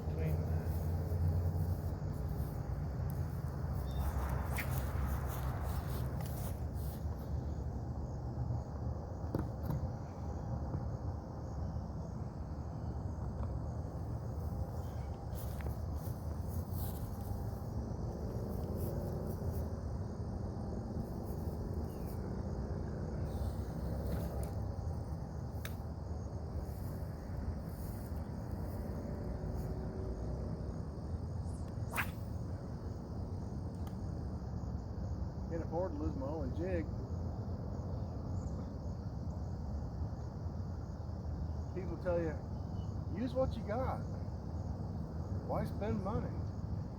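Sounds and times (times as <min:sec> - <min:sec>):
insects buzzing: 0:00.0 - 0:46.9.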